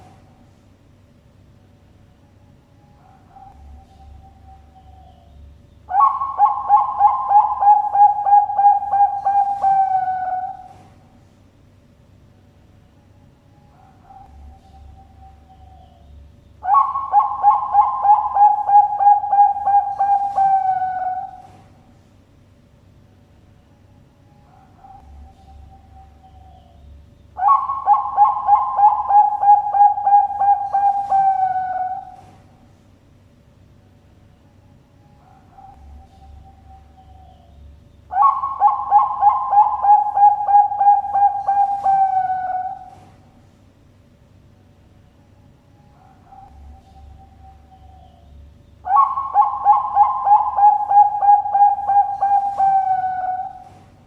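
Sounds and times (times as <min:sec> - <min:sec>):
dove cooing: 0:00.0 - 0:00.4, 0:05.9 - 0:11.1, 0:16.6 - 0:21.9, 0:27.4 - 0:32.6, 0:38.1 - 0:43.4, 0:45.8 - 0:54.0.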